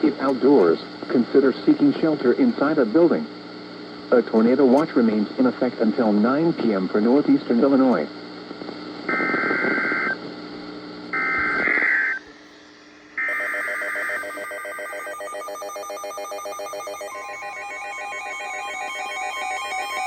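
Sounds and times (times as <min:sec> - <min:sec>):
warbling digital data tones: 0:11.2 - 0:12.3.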